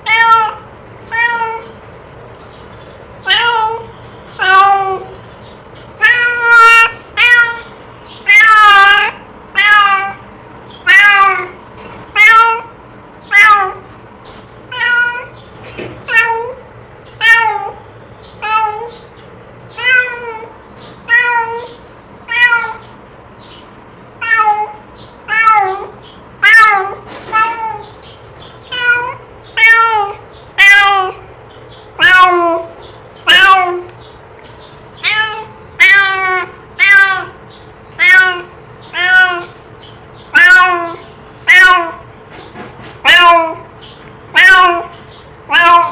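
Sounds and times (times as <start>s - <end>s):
cat meowing: 0.0s - 1.8s, 3.2s - 5.2s, 6.0s - 10.2s, 10.8s - 13.9s, 14.7s - 15.4s, 16.0s - 16.6s, 17.2s - 17.8s, 18.4s - 19.0s, 19.8s - 22.9s, 24.2s - 28.0s, 28.6s - 31.3s, 32.0s - 33.9s, 35.0s - 39.6s, 40.2s - 42.1s, 43.0s - 43.7s, 44.3s - 45.9s.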